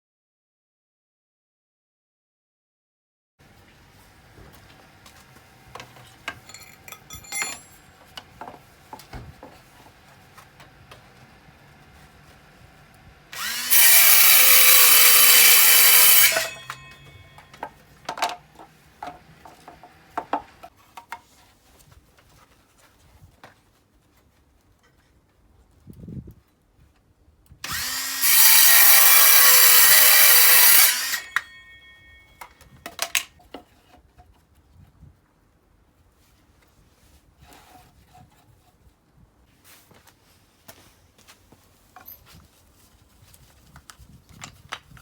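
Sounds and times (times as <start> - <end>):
tools and wood knocking: 4.4 - 11.2, 16.2 - 21.5
power tool running on wood: 13.3 - 16.9, 27.6 - 31.4.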